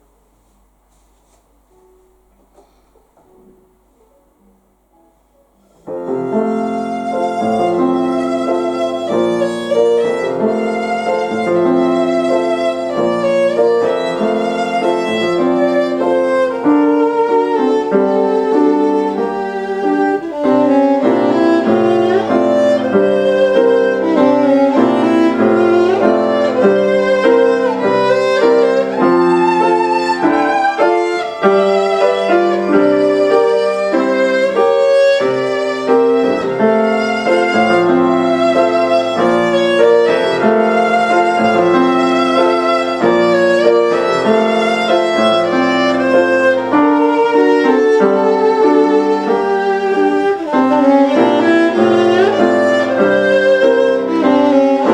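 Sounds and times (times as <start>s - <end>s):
piano accompaniment: 0.0s - 54.9s
violin melody with vibrato: 5.8s - 54.9s.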